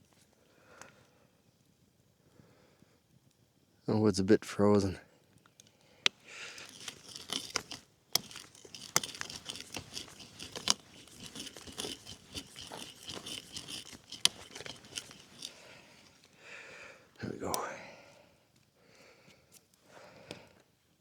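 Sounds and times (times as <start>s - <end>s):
hand drill rasping into log: 6.4s - 16.4s
wood cracking and snapping: 6.5s - 15.6s.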